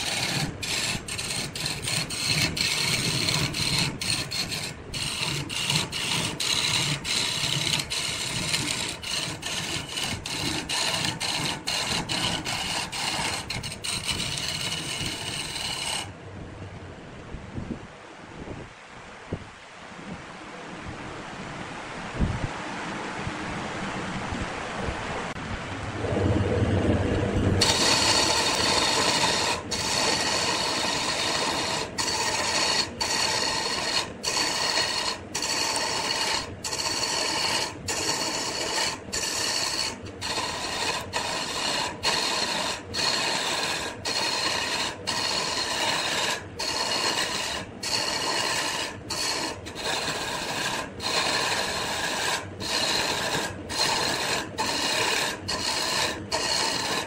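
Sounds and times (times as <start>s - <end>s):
wood lathe scraping: 0.0s - 16.2s, 27.6s - 57.0s.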